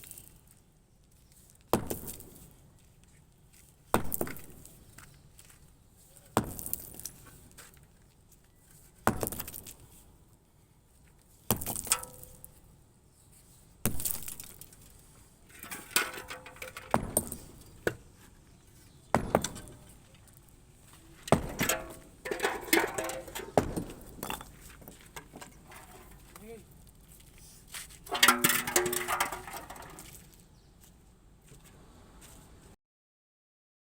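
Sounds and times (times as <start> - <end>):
hammer striking concrete: 19.2 - 19.8, 21.3 - 24.5.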